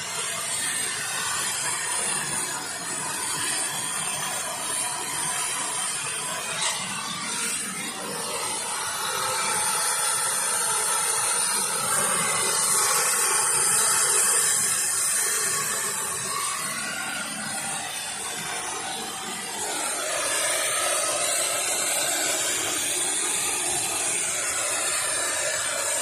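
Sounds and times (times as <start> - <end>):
steady hiss: 7.9 - 26.0.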